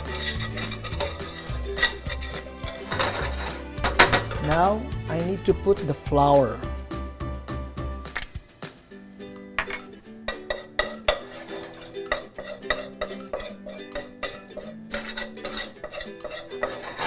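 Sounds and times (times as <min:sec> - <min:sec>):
utensil scraping frying pan: 0:00.0 - 0:06.0, 0:09.5 - 0:17.0
soft background music: 0:00.0 - 0:17.0.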